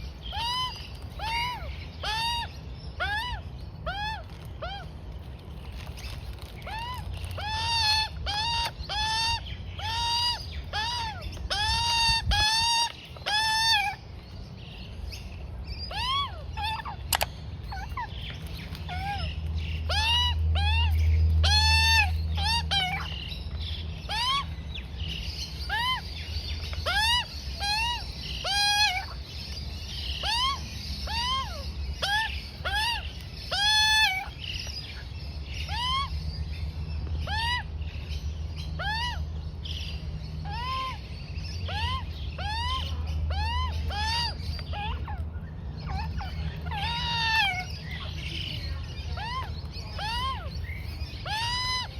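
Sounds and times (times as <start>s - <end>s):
young magpie begging squawks: 0.2s - 4.9s, 6.6s - 14.0s, 15.9s - 17.0s, 18.9s - 23.2s, 24.0s - 24.6s, 25.6s - 34.4s, 35.5s - 36.2s, 37.2s - 37.7s, 40.4s - 45.2s, 45.8s - 51.9s.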